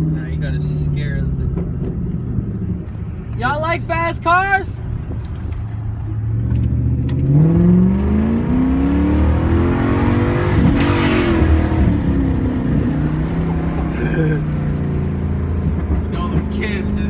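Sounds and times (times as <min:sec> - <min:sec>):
car engine revving: 0:04.9 - 0:17.0.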